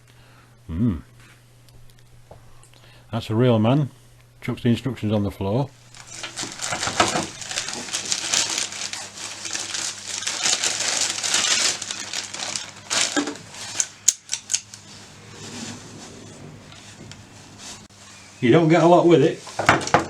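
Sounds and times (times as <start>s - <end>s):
plastic and paper crinkling: 5.9s - 18.2s.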